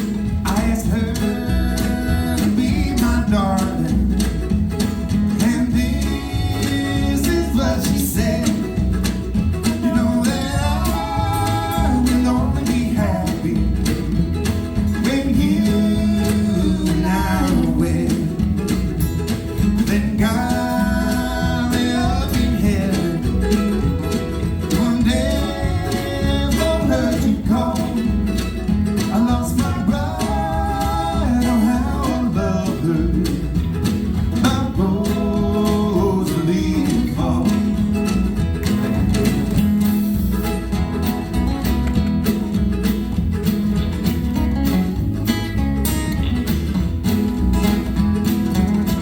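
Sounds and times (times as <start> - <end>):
strummed acoustic guitar: 0.0 - 49.0
person singing: 5.4 - 8.8, 9.7 - 14.1, 14.9 - 18.5, 19.8 - 23.6, 24.5 - 28.4, 29.0 - 33.6, 34.4 - 37.8.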